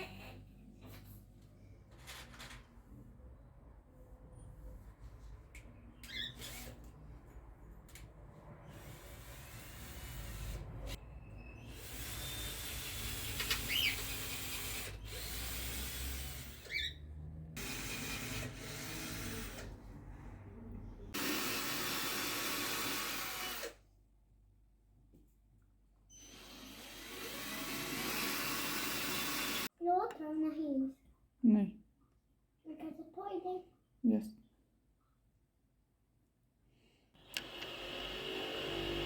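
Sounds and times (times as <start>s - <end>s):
power drill running: 6.1s - 6.8s, 8.7s - 10.6s, 11.7s - 16.9s, 17.6s - 19.7s, 21.2s - 23.8s, 26.1s - 29.7s, 37.2s - 39.0s.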